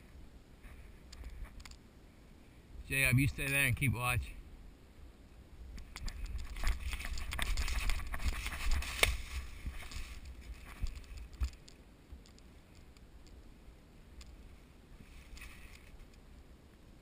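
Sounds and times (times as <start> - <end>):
small clicks: 1.1 - 1.8, 5.7 - 9.2, 9.8 - 13.4, 14.2 - 14.4
rustling and scraping: 5.8 - 13.4, 14.2 - 16.2.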